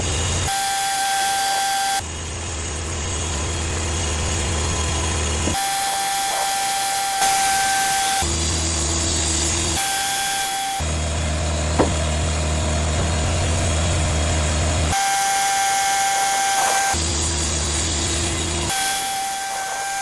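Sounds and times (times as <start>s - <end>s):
sawmill high-pitched whine: 0.0s - 20.0s
sawmill low mechanical drone: 0.0s - 20.0s.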